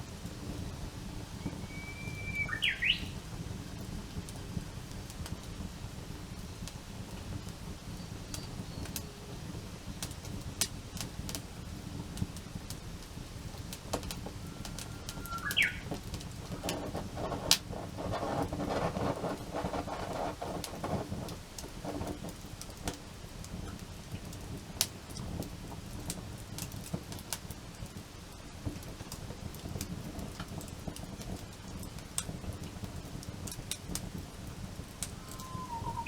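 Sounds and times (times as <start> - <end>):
wood fire crackling: 0.0 - 36.0
short rising whistle: 1.4 - 3.1, 14.4 - 15.9, 35.2 - 36.0.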